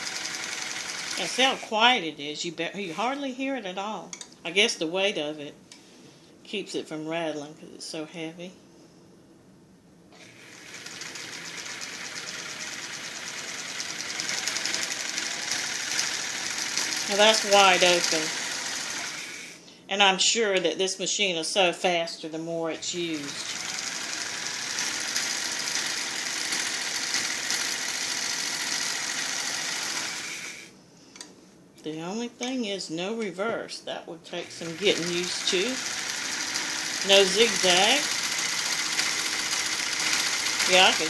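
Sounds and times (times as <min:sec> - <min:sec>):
sewing machine stitching: 0:00.0 - 0:01.7, 0:10.2 - 0:19.6, 0:23.2 - 0:30.7, 0:34.5 - 0:41.0.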